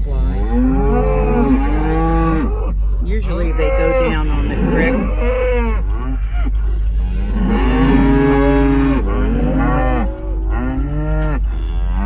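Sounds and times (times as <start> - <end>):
cows mooing: 0.0 - 12.0.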